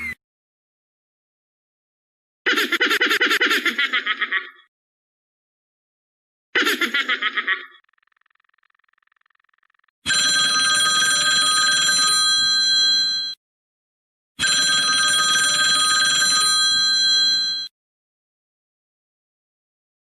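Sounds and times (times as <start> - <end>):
old telephone bell ringing: 10.1 - 13.4, 14.4 - 17.7.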